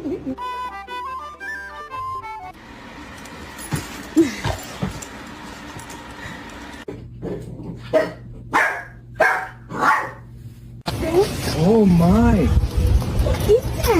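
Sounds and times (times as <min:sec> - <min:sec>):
dog barking: 0:07.9 - 0:10.3.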